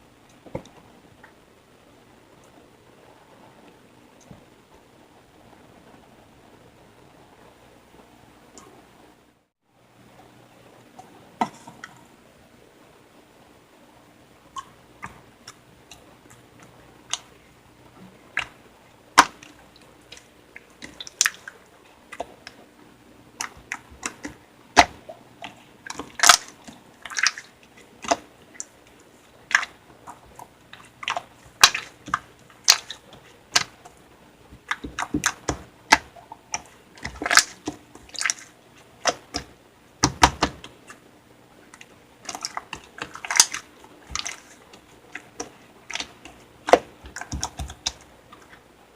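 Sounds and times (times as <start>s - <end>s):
slime squished by hand: 23.4s - 28.7s, 29.5s - 33.8s, 34.5s - 40.7s, 41.8s - 48.5s.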